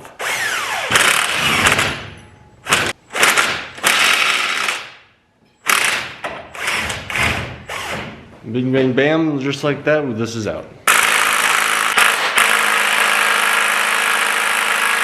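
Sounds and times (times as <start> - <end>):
impact wrench bursts: 0.1 - 5.0, 5.6 - 8.2, 10.9 - 15.0.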